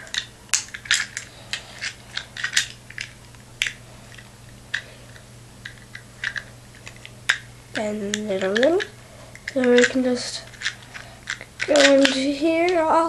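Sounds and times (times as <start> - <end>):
plastic toy parts clicking: 0.0 - 3.8, 5.6 - 7.4, 8.0 - 12.8.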